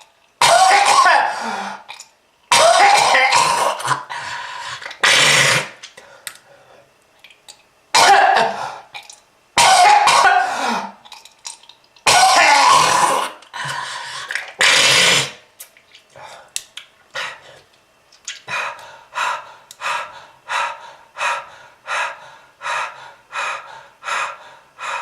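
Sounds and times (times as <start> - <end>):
person coughing in heavy fits: 0.4 - 1.5, 2.5 - 4.1, 8.0 - 8.8, 9.6 - 11.0, 12.0 - 13.3.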